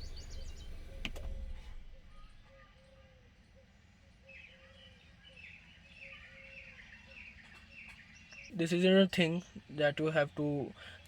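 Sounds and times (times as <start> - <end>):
car engine rumble: 0.0 - 2.5
birds chirping: 0.0 - 2.6.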